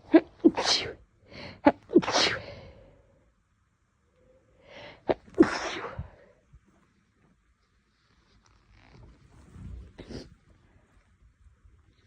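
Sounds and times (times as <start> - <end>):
girl sneezing: 0.0 - 1.0, 1.6 - 2.5, 5.1 - 6.2.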